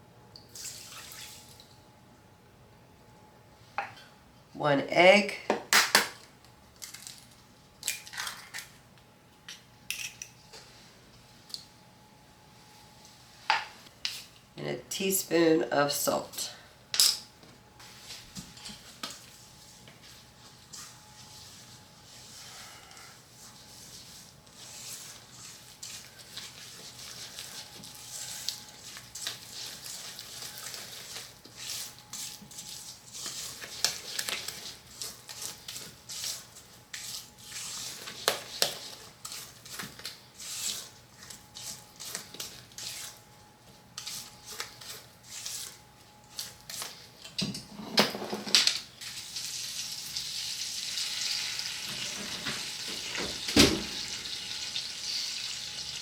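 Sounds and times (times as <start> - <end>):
utensil scraping a mixing bowl: 23.4 - 39.8, 40.4 - 43.2, 44.0 - 45.8.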